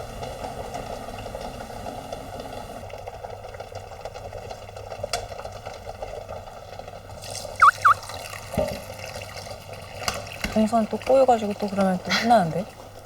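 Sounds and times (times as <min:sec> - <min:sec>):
water running in kitchen: 0:06.6 - 0:13.0
chirping tones: 0:07.6 - 0:08.0.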